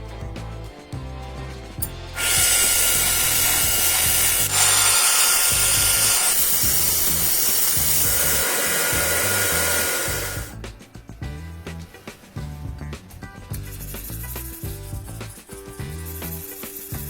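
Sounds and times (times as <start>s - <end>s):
background music: 0.0s - 17.0s
power tool working steel: 2.2s - 10.6s.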